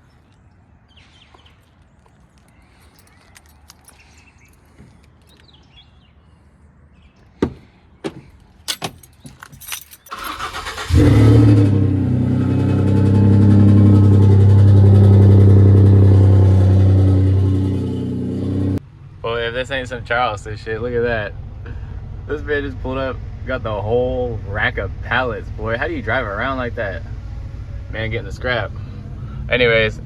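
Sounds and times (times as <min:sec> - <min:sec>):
vehicle engine cranking and starting: 0:08.6 - 0:15.1.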